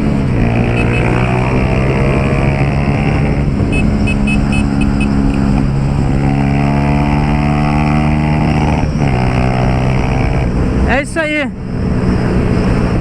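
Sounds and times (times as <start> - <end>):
motorcycle engine revving: 0.0 - 10.8
short high beeps: 3.7 - 5.1.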